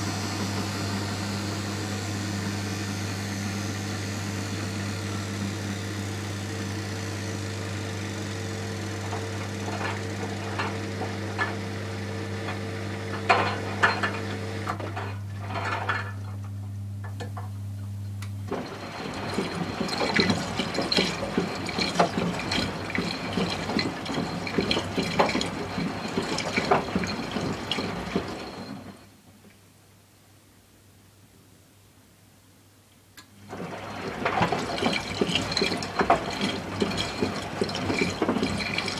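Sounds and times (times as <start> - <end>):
washing machine electric hum: 0.0 - 29.4, 32.5 - 38.9
water gurgling: 18.8 - 28.7, 33.9 - 38.9.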